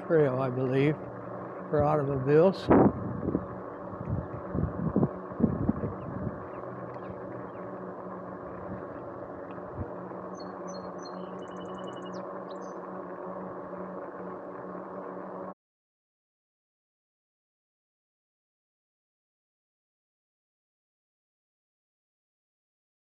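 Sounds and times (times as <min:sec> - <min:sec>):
wind and road noise: 0:00.0 - 0:10.6
electric bike motor hum: 0:00.0 - 0:15.6
bird chirps: 0:10.3 - 0:12.8.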